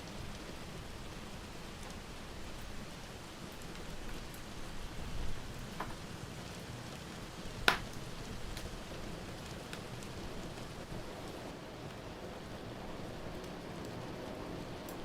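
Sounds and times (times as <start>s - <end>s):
rain hiss: 0.0s - 15.0s
wood fire crackling: 0.0s - 15.0s
fire popping: 7.5s - 11.0s.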